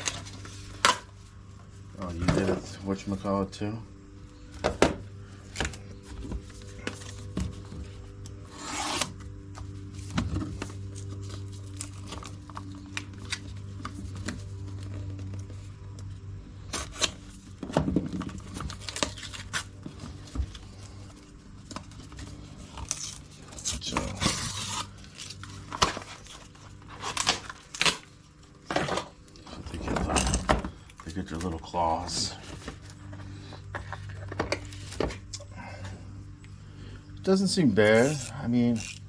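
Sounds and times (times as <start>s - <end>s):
steady low hum: 0.0s - 39.0s
hands handling tools and packaging: 16.7s - 35.4s.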